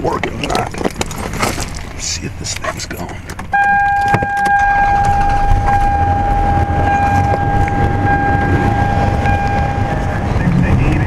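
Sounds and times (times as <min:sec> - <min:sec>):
car engine running: 0:00.0 - 0:11.0
car warning buzzer tone: 0:03.5 - 0:10.2.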